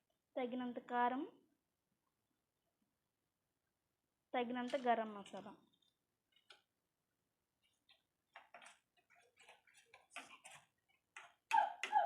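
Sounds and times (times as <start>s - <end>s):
spoon scraping against a bowl: 8.6s - 10.7s.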